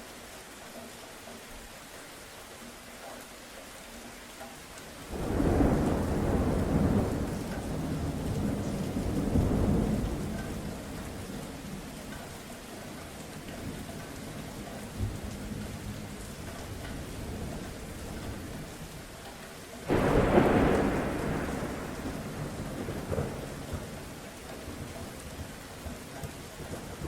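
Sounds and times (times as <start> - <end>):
steady rain: 0.0 - 27.0
thunder rumbling: 5.1 - 11.9, 19.9 - 27.0.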